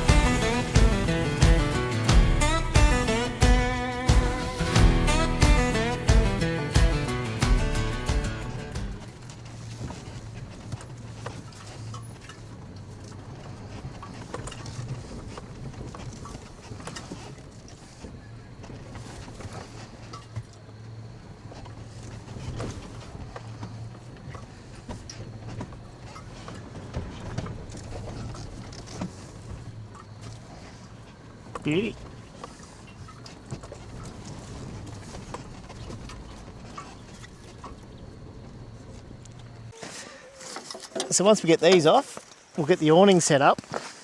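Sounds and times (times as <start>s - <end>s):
guitar music: 0.0s - 9.1s
off-road vehicle engine running: 0.0s - 17.2s
car engine running low: 0.0s - 39.7s.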